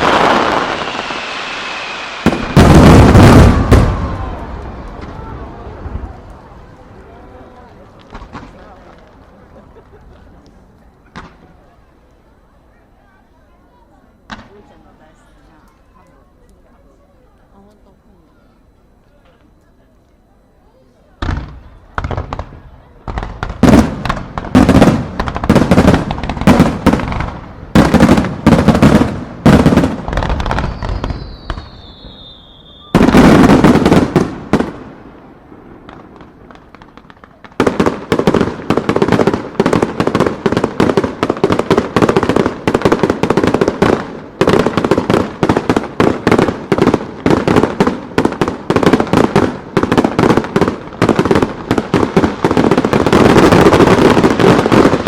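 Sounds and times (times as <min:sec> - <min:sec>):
falling firework whistle: 0:00.0 - 0:06.3, 0:28.9 - 0:36.0.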